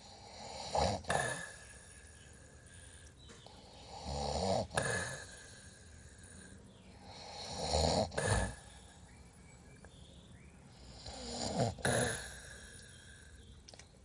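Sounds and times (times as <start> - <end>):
person snoring: 0.0 - 1.9, 3.7 - 8.8, 10.8 - 13.3.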